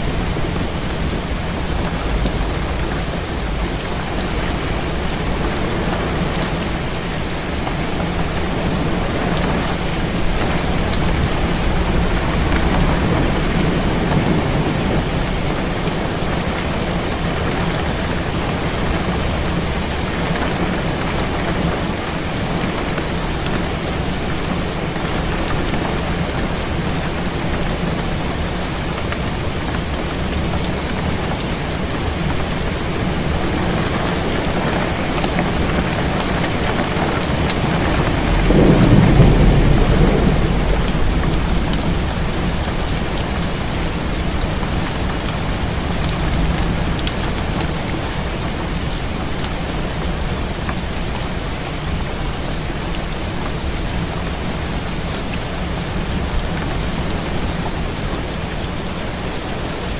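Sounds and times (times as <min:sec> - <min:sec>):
low roll of thunder: 0:00.0 - 0:06.8, 0:10.1 - 0:18.1, 0:36.0 - 0:47.0
heavy rain on a window: 0:00.0 - 0:59.9.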